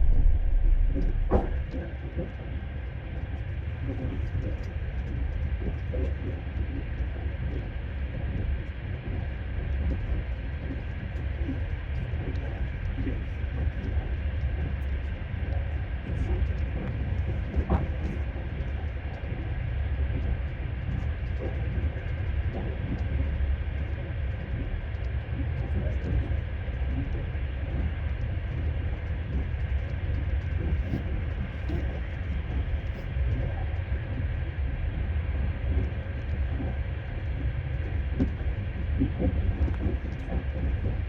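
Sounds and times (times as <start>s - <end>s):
train rumbling: 0.0s - 1.9s.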